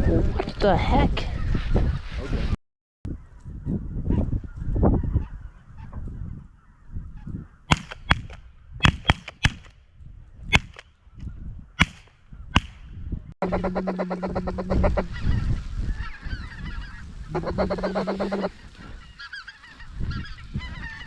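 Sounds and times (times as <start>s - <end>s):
wind buffeting microphone: 0.0s - 21.0s
geese honking: 13.4s - 21.0s.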